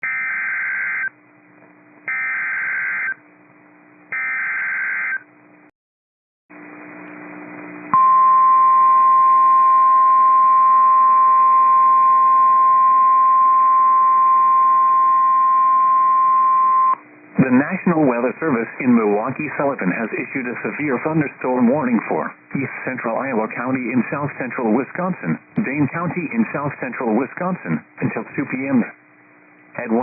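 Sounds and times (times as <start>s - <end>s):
warning alarm tone: 2.1s - 3.2s, 4.1s - 5.2s.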